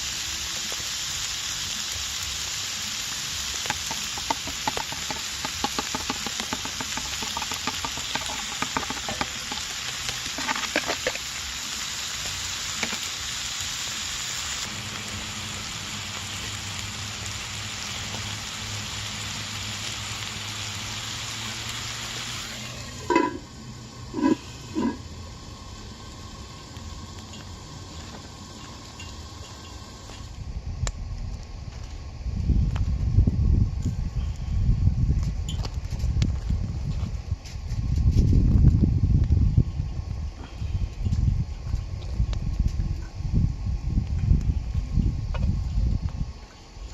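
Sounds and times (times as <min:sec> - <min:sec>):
food sizzling in a hot pan: 0:00.0 - 0:30.3
utensil knocking on pan: 0:03.7 - 0:11.0.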